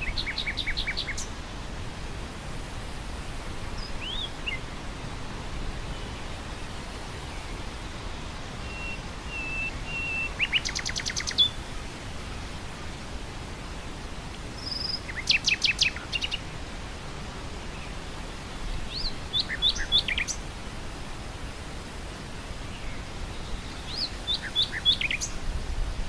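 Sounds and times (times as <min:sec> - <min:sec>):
nightingale singing: 0:00.0 - 0:01.4, 0:03.8 - 0:04.6, 0:08.6 - 0:11.6, 0:14.5 - 0:16.5, 0:18.9 - 0:20.4, 0:23.4 - 0:25.4
wind through grass: 0:00.0 - 0:26.0.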